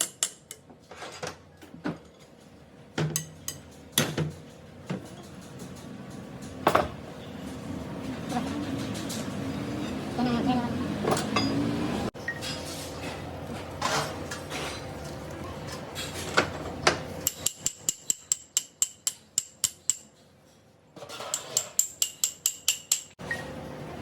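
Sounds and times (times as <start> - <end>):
hammer tapping on metal: 17.2 - 20.1, 21.2 - 23.2.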